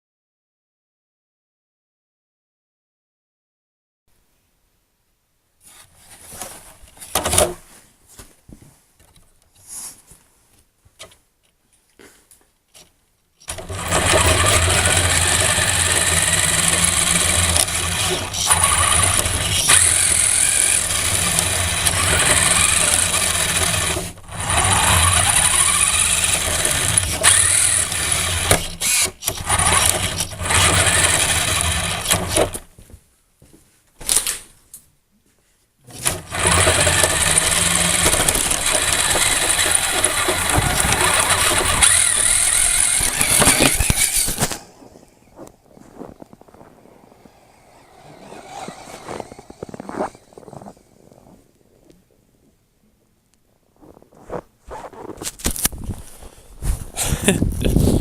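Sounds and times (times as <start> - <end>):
toy car motor whining: 13.4 - 32.6, 35.9 - 51.3.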